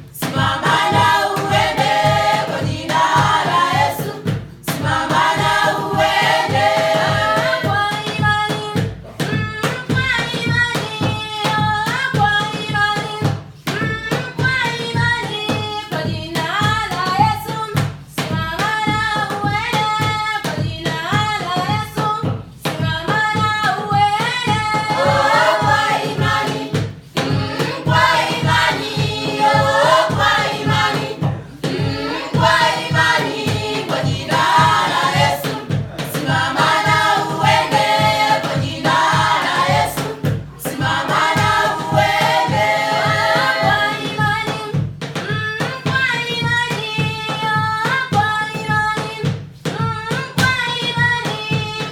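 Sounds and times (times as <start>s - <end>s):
voices singing together: 0.0s - 13.1s, 20.4s - 51.9s
low beat: 23.0s - 44.4s.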